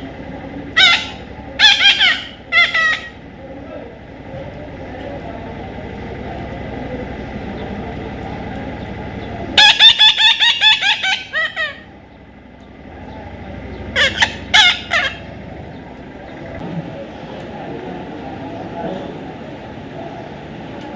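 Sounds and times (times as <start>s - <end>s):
parrot shrill calls: 0.8s - 3.2s, 9.6s - 11.9s, 13.9s - 15.2s.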